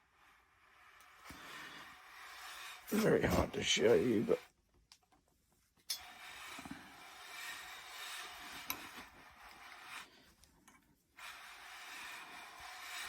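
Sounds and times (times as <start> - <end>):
piston rings scraping in bores: 5.9 - 10.2, 11.2 - 13.0.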